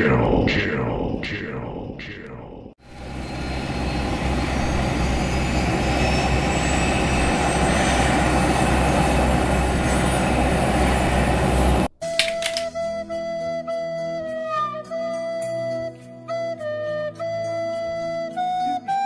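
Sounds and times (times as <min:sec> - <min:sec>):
airplane engine rumble: 0:02.8 - 0:11.9.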